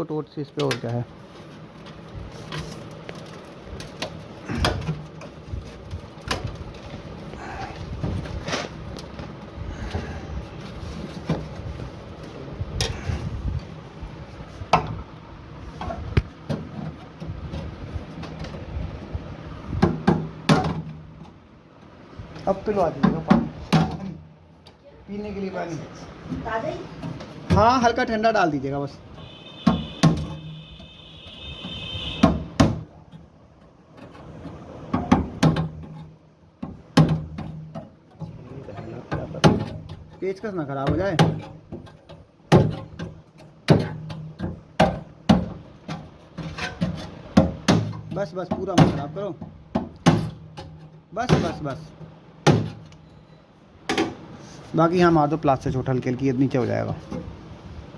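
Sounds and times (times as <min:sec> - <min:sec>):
high ringing tone: 0:29.2 - 0:32.3
hammer striking metal: 0:29.3 - 0:32.8.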